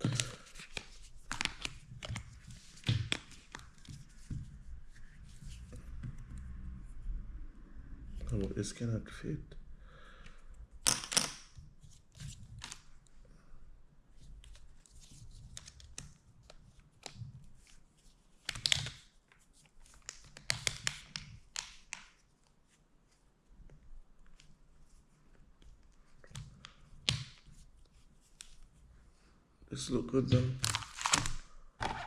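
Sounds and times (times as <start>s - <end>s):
plastic phone case clicks and rustling: 0.1s - 4.0s, 30.6s - 32.0s.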